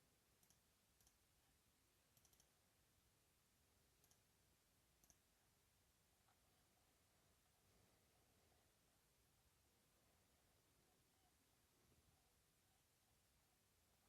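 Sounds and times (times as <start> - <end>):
computer mouse clicks: 0.4 - 1.2, 2.1 - 2.6, 4.0 - 4.3, 5.0 - 5.3.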